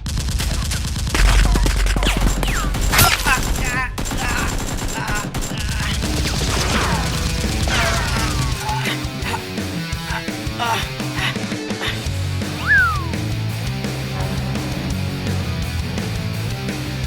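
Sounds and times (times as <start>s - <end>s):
rapid gunfire: 0.0s - 9.3s
falling whistle-like sounds: 12.6s - 13.4s.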